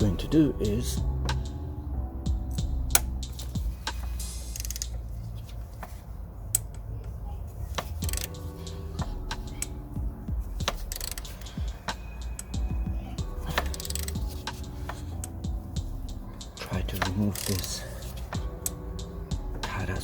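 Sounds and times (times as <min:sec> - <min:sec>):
quiet background music: 0:00.0 - 0:20.0
ratchet wrench clicking: 0:04.2 - 0:05.0, 0:07.9 - 0:08.5, 0:10.6 - 0:12.6, 0:13.5 - 0:15.4, 0:17.0 - 0:18.8.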